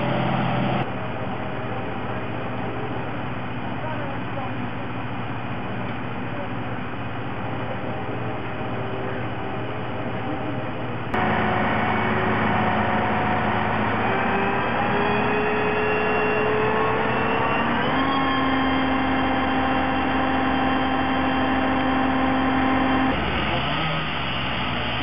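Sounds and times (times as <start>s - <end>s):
heavy equipment engine revving: 0.0s - 0.9s, 11.1s - 25.0s.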